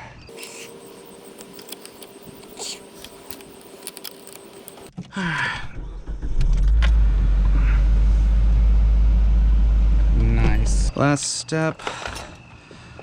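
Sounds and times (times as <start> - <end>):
car engine starting and idling: 0.3 - 4.9.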